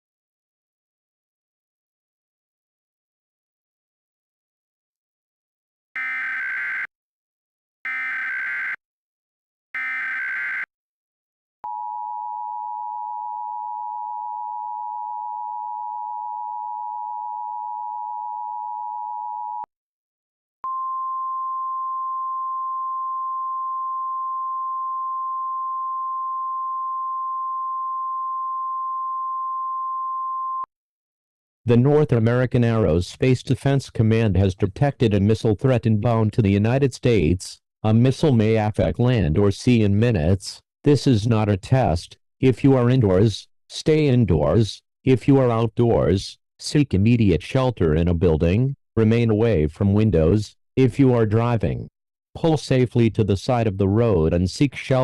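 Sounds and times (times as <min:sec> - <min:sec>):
steady high alert tone: 0:09.8 - 0:10.7.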